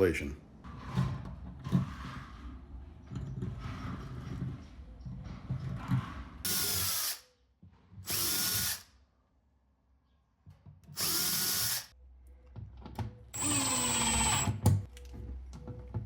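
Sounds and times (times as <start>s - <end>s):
power drill bursts: 8.1s - 8.8s, 11.0s - 11.9s, 13.4s - 14.6s
knocks and handling: 14.4s - 16.0s.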